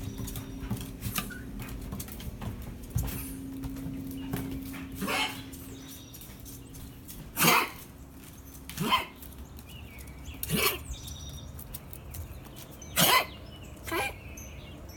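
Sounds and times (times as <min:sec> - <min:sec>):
dog coughing: 0:07.4 - 0:07.8, 0:10.5 - 0:10.9, 0:12.9 - 0:14.3.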